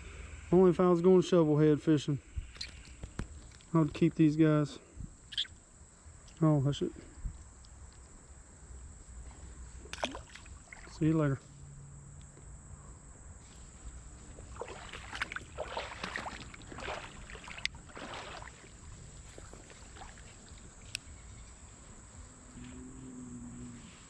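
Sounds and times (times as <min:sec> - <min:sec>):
creek water splashing: 0:09.8 - 0:11.1, 0:13.4 - 0:22.1.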